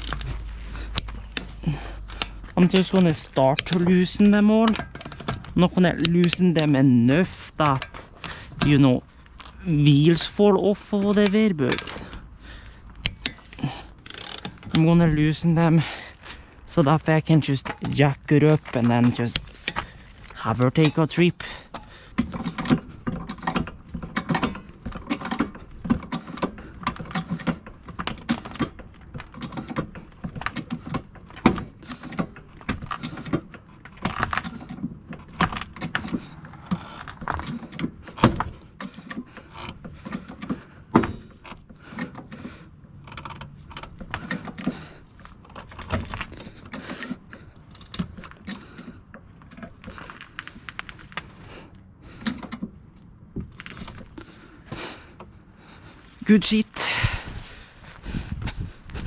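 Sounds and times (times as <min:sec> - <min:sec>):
wrench clinking on lug nuts: 0:00.0 - 0:12.2, 0:12.9 - 0:14.9.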